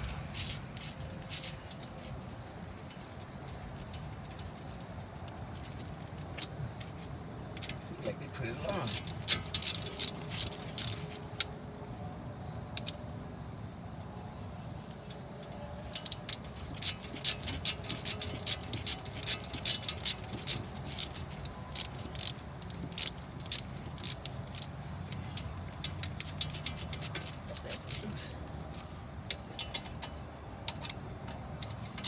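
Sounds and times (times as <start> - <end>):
ratchet wrench clicking: 8.4 - 11.5, 15.9 - 32.0.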